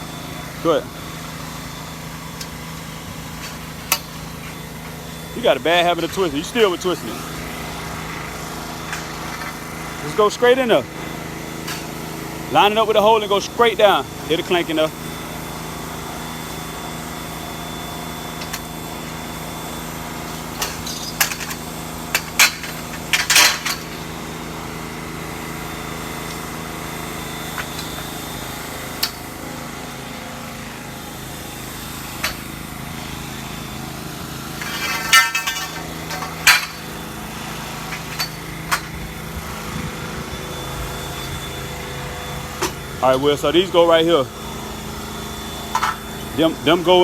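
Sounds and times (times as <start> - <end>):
steady motor hum: 0.0 - 47.0
metal poles knocking and clinking: 20.6 - 24.0, 34.6 - 36.9, 37.9 - 39.0, 45.7 - 46.0.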